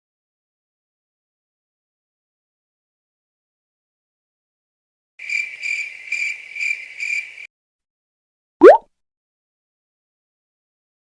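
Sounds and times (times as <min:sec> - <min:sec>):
high pulsing cricket chirp: 0:05.2 - 0:07.4
short loud rising bloop: 0:08.6 - 0:08.8.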